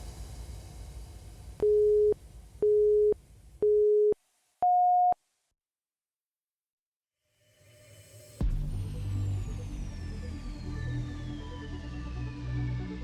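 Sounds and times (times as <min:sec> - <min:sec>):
background music: 0:08.4 - 0:13.0.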